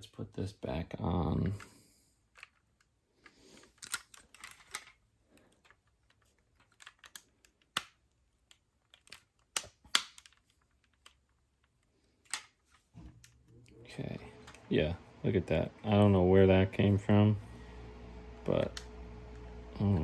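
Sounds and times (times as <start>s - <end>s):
plastic toy parts clicking: 1.5s - 13.4s.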